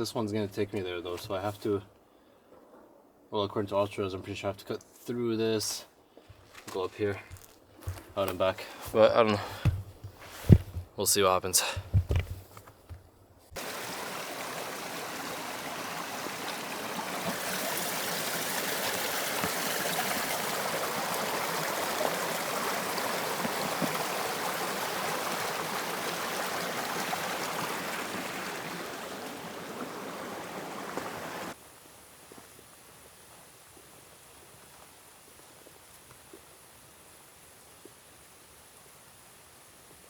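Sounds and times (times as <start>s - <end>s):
water rushing in stream: 13.6s - 31.6s.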